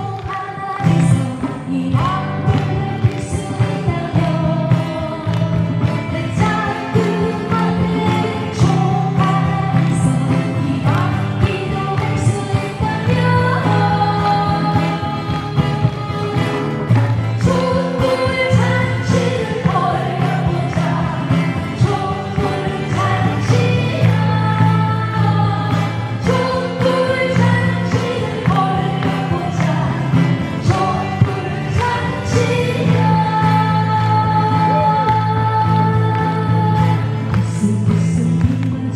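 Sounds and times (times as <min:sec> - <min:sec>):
pop band accompaniment: 0:00.0 - 0:38.9
woman singing: 0:00.0 - 0:38.9.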